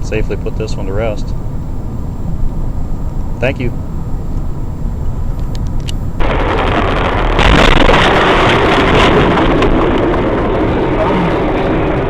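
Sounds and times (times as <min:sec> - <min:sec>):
car driving rumble: 0:00.0 - 0:12.0
loud even rushing noise: 0:06.2 - 0:12.0.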